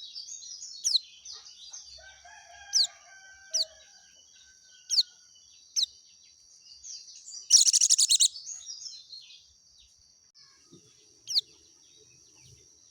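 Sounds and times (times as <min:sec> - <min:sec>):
bird chirp sweeping downward: 0:07.5 - 0:08.4
fast bird trill: 0:07.5 - 0:08.4.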